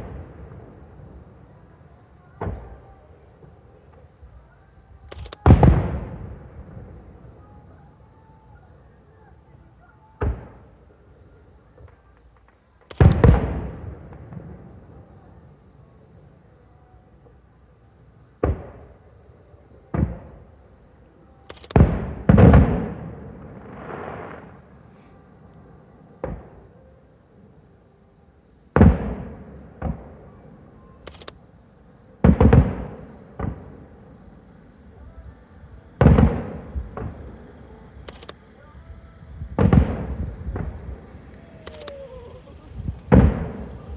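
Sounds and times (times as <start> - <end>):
fireworks booming with echo: 0.0 - 7.9, 10.1 - 15.5, 21.8 - 27.0, 28.7 - 43.9.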